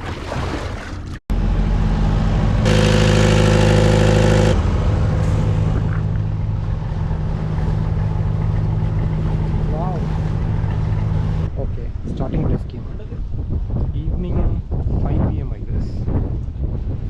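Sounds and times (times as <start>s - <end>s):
boat engine droning: 0.2s - 11.8s.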